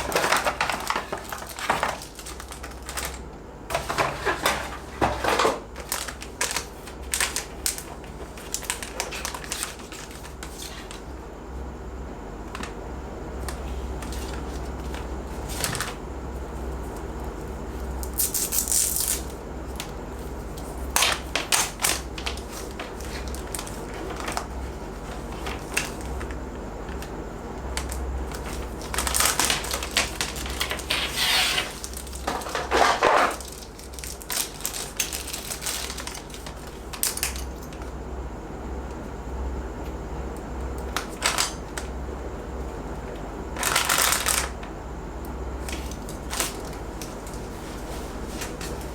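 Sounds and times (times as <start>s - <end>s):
packaging crinkling: 0.0s - 11.1s, 21.0s - 37.8s, 40.8s - 41.9s, 43.6s - 44.7s, 45.6s - 48.9s.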